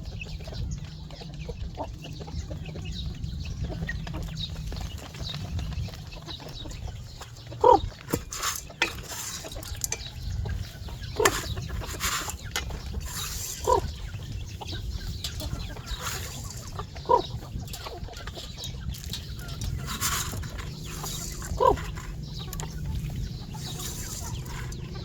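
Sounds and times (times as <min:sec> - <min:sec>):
chickens clucking: 0:00.0 - 0:25.0
low rumble: 0:12.9 - 0:25.0.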